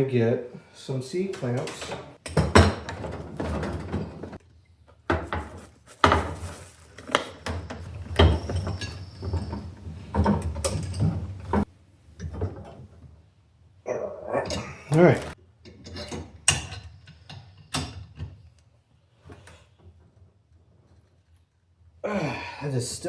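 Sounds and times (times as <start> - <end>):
metal tools clattering: 1.3 - 4.4, 5.6 - 12.4, 14.4 - 18.2.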